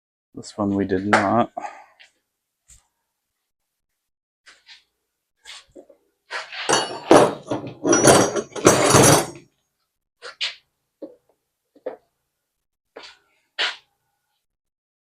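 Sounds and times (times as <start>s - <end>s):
parts and tools clattering: 6.3s - 9.5s.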